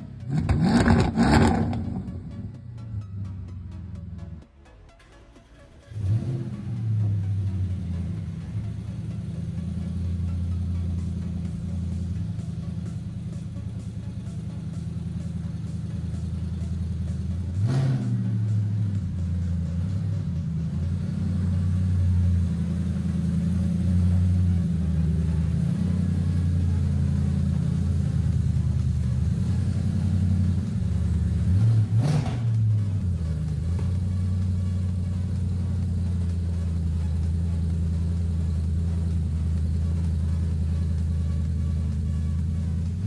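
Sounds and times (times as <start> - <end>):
car engine running: 0.0 - 4.8, 5.6 - 43.0.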